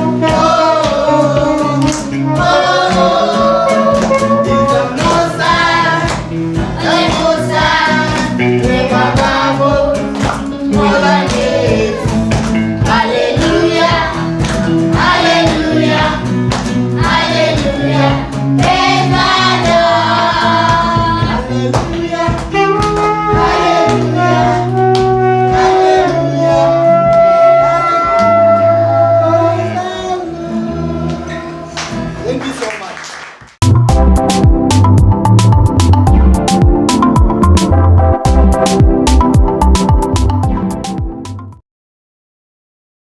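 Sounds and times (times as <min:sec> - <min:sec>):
backing track with steady beat: 0:00.0 - 0:29.3, 0:33.6 - 0:41.6
group of voices singing: 0:00.0 - 0:32.1.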